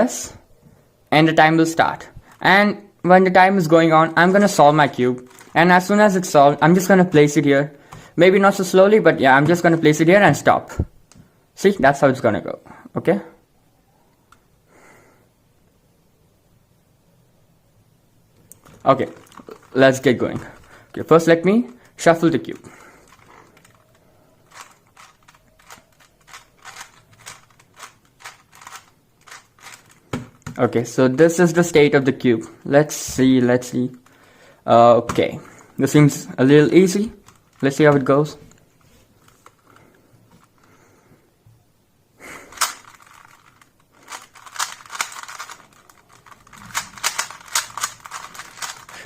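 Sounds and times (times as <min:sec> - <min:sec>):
puzzle cube layers clicking: 0:22.5 - 0:30.6, 0:42.5 - 0:49.0.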